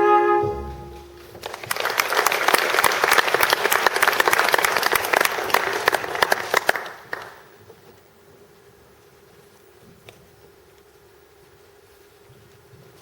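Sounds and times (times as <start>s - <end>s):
audience applauding: 1.2s - 7.5s.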